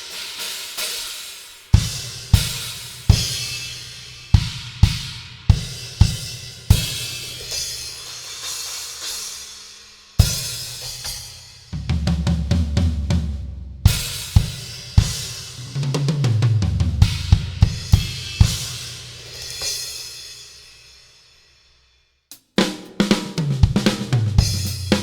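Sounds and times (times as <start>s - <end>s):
drum fills: 1.8s - 9.2s, 10.2s - 20.0s, 22.3s - 25.0s.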